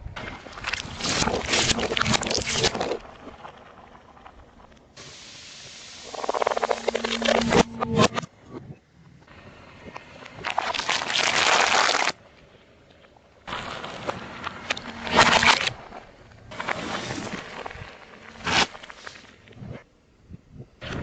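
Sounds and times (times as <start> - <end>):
objects crunching under car tyre: 0.2 - 4.7, 13.5 - 19.4
sharp crack: 0.3 - 4.9, 10.3 - 12.2, 13.5 - 19.3.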